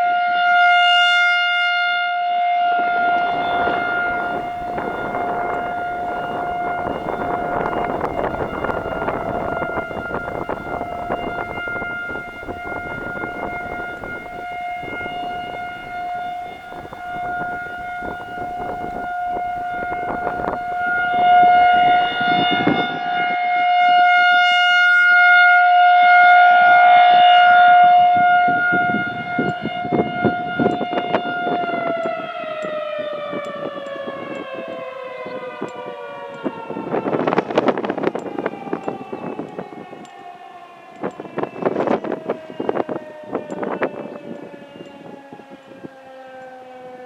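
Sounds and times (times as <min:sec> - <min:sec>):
rotating siren steady tone: 0:00.0 - 0:47.0.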